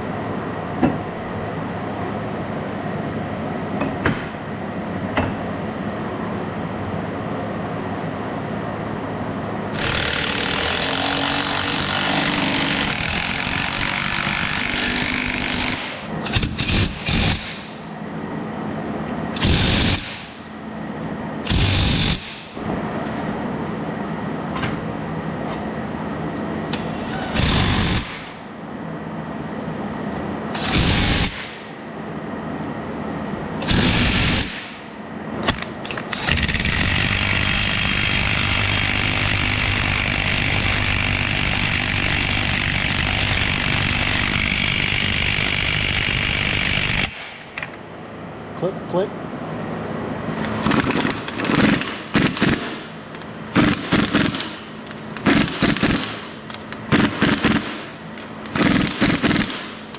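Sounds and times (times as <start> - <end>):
steady mechanical hum: 0.0 - 59.9
power tool running: 9.7 - 17.7, 21.4 - 22.5, 26.7 - 28.3, 33.6 - 34.6, 36.1 - 47.2.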